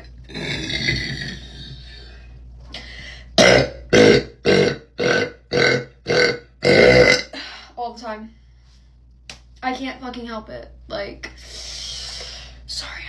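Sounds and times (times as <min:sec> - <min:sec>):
woman burping: 0:00.3 - 0:01.8, 0:03.4 - 0:07.4.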